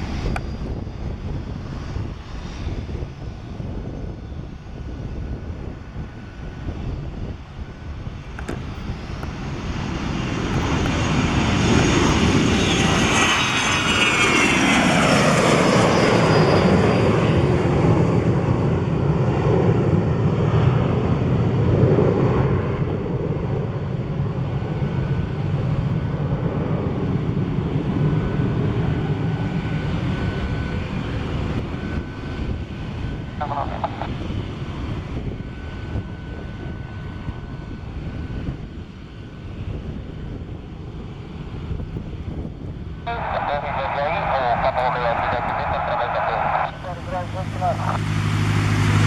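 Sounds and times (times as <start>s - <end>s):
jet engine rumble: 0.0s - 49.0s
jet engine whine passing: 4.2s - 23.1s, 43.1s - 49.0s.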